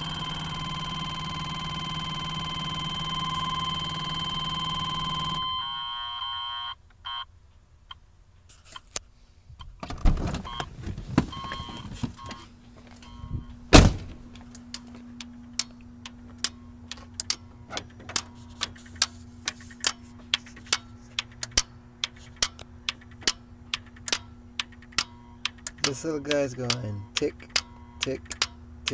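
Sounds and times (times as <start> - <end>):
electrical relay ticking: 0.0 - 5.4, 14.3 - 28.9
steady hum: 0.0 - 6.6, 10.0 - 28.9
two-tone electronic warning chime: 0.0 - 7.3, 11.3 - 13.6, 26.3 - 28.2.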